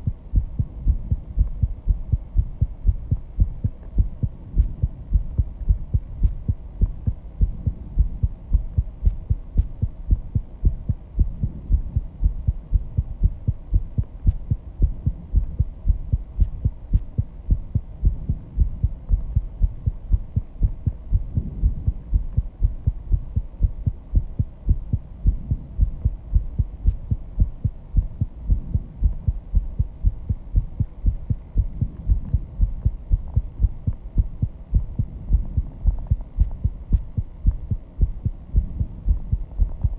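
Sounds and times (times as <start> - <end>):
heartbeat: 0.0 - 39.9.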